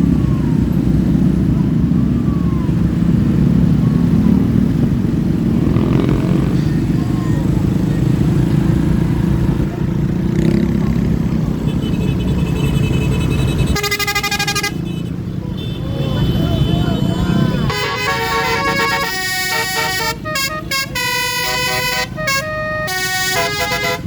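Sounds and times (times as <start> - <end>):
motor vehicle rumble: 0.0 - 24.0
multi-tone musical horn: 13.7 - 14.9, 17.6 - 24.0.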